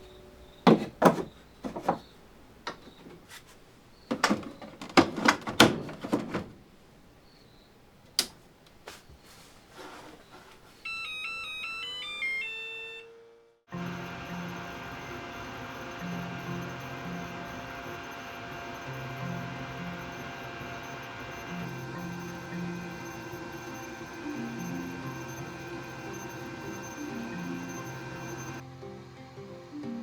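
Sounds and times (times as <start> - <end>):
sharp knocks and thunks: 0.7 - 2.1.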